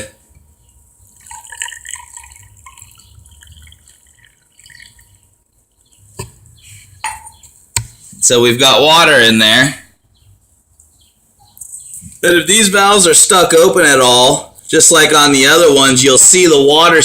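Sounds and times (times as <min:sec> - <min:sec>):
water trickling and splashing: 0:01.1 - 0:05.7.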